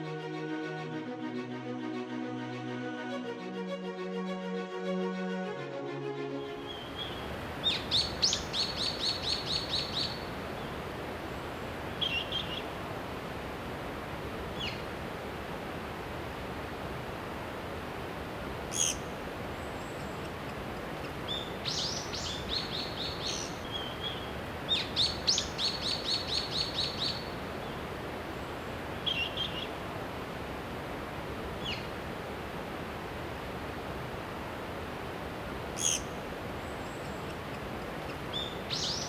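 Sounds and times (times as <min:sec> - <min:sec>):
wild birds calling: 0:18.7 - 0:19.0, 0:35.8 - 0:36.1.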